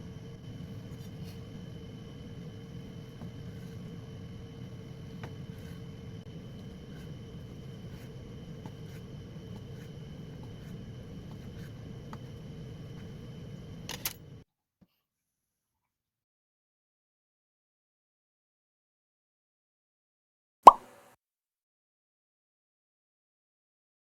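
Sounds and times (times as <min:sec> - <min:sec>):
low hum: 0:00.0 - 0:14.4.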